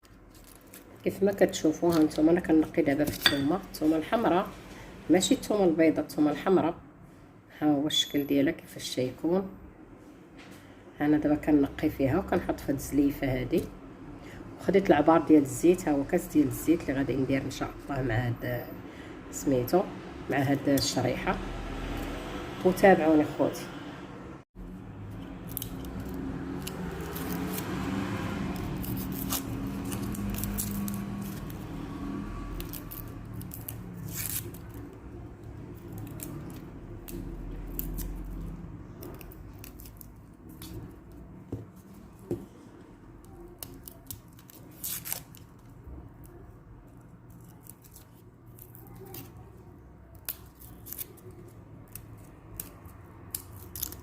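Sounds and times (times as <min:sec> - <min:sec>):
papery skins rustling: 0:00.0 - 0:02.1.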